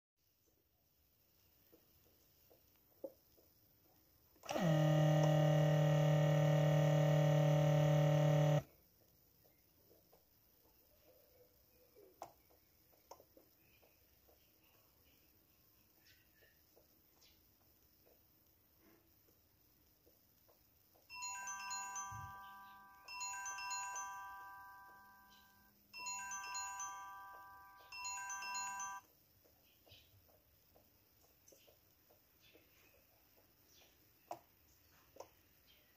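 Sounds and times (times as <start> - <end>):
chiming phone ringtone: 4.5 - 8.6, 21.1 - 29.1.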